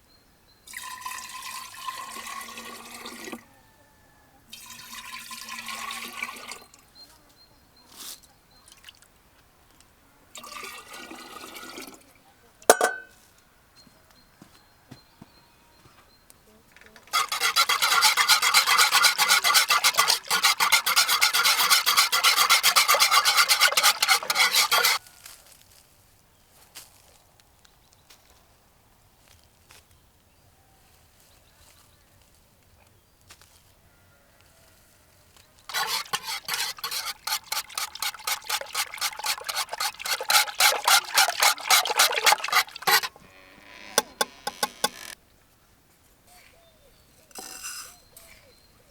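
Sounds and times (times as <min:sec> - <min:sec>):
food grated on metal grater: 0:17.1 - 0:25.0, 0:35.7 - 0:43.2, 0:44.0 - 0:45.2.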